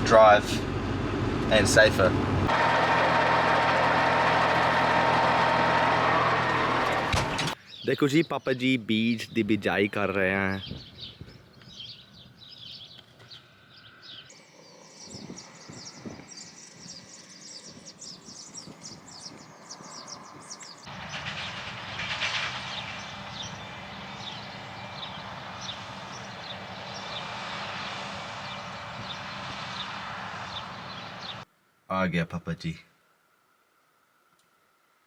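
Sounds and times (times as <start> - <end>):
tractor engine running: 0.0 - 7.6, 20.9 - 31.4
birds chirping: 6.7 - 31.4.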